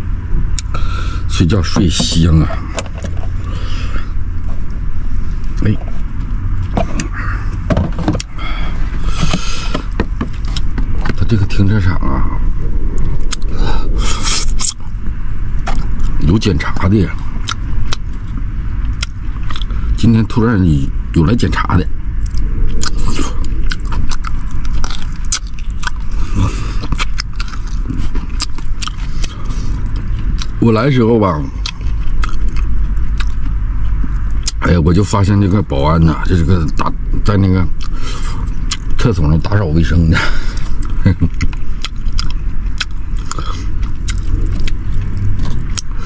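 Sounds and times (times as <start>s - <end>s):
steady low rumble: 0.0s - 46.0s
chewing on bones: 9.0s - 11.5s, 14.2s - 16.3s, 17.2s - 19.8s, 22.2s - 30.6s, 31.3s - 34.6s, 37.8s - 39.6s, 40.2s - 46.0s.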